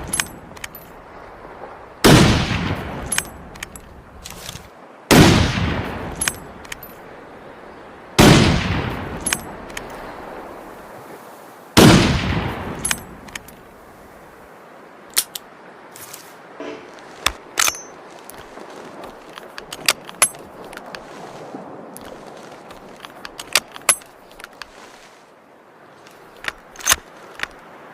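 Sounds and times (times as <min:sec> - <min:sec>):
rifle shots echoing: 0:02.0 - 0:03.3, 0:05.1 - 0:06.4, 0:08.2 - 0:09.5, 0:11.8 - 0:13.2
light metallic clicks: 0:03.0 - 0:04.7, 0:09.2 - 0:10.0.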